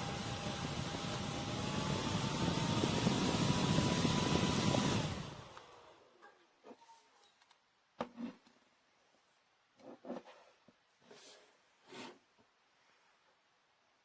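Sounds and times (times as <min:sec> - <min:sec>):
fan motor whine: 0:00.0 - 0:06.0
handheld fan running: 0:00.0 - 0:06.0.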